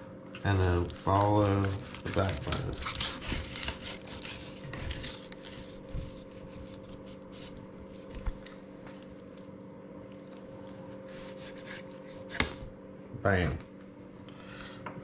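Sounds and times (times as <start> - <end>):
electrical hum: 0.0 - 15.0
knife slicing fish: 0.7 - 8.5, 10.2 - 12.7.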